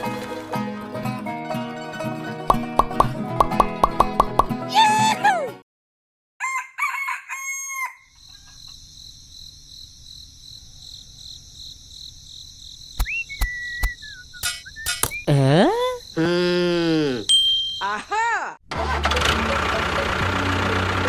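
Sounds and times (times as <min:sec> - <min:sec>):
banjo-like music: 0:00.0 - 0:05.3, 0:18.7 - 0:21.0
rooster crowing: 0:06.4 - 0:08.2
insects chirring: 0:08.0 - 0:18.0.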